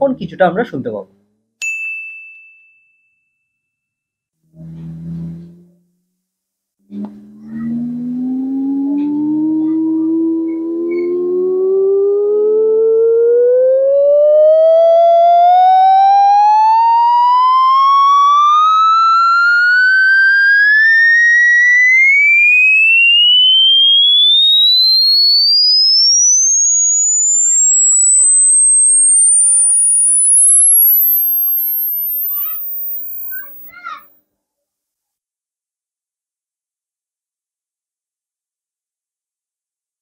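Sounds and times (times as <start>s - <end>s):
rising test tone sweep: 4.5s - 5.8s, 6.9s - 33.7s.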